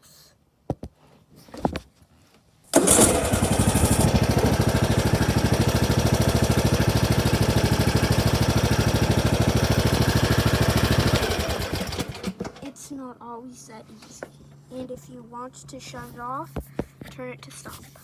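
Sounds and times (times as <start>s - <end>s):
lawnmower engine chugging: 2.7s - 12.7s.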